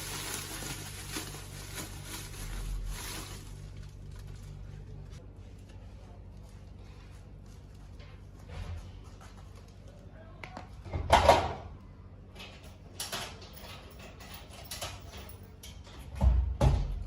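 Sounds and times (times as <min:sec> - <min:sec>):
household knocks and rustles: 0:16.0 - 0:17.0.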